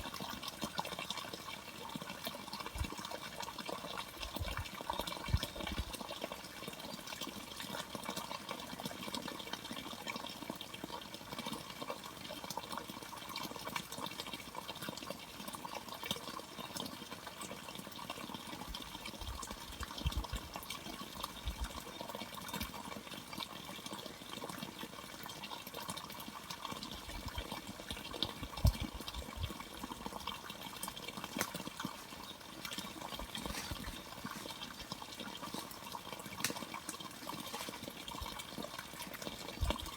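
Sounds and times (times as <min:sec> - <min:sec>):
running water splashing: 0:27.1 - 0:39.9.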